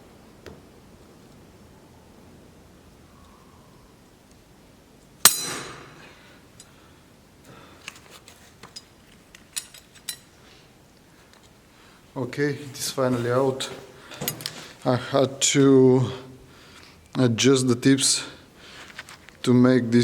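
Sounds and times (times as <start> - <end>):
ringing metallic clink: 5.2 - 6.7
light metal clicks: 8.6 - 10.3.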